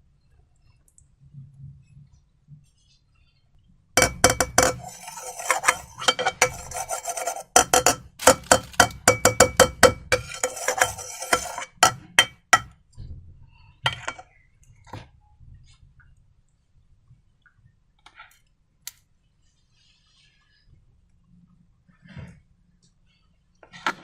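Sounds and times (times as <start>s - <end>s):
scraping and stirring in container: 4.0s - 12.7s, 13.9s - 14.3s.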